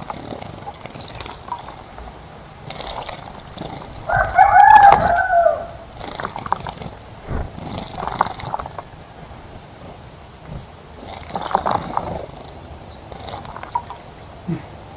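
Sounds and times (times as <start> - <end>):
rooster crowing: 4.0 - 5.9.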